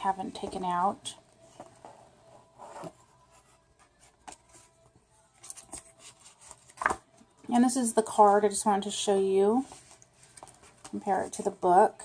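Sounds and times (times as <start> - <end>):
paper rustling and tapping: 5.4 - 7.0.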